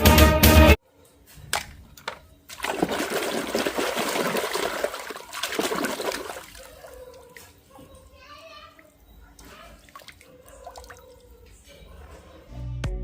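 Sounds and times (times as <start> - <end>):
background music: 0.0 - 0.8, 12.5 - 13.0
water splashing and trickling: 2.0 - 12.0.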